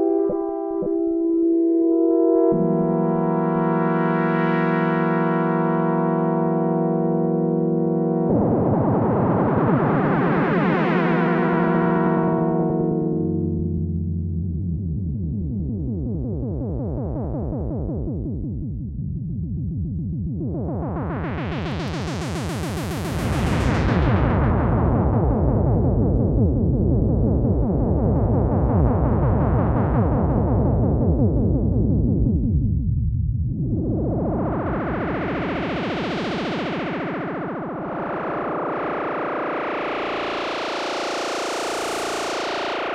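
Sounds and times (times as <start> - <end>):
analog synthesizer low notes: 0.0 - 42.9.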